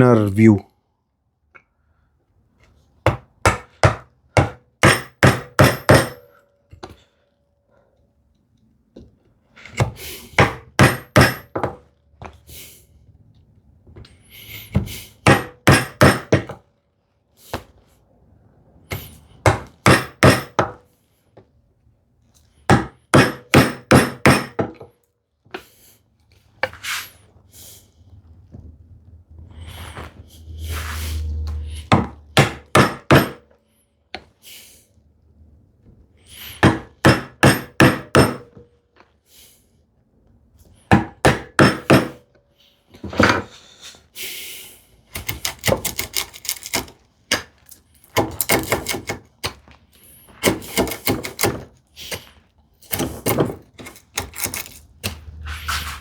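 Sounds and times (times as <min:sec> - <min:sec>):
mallet striking chisel: 0:03.1 - 0:06.3, 0:10.4 - 0:11.8, 0:15.2 - 0:16.5, 0:19.5 - 0:20.8, 0:22.7 - 0:24.7, 0:31.9 - 0:33.4, 0:36.6 - 0:38.6, 0:41.2 - 0:42.2.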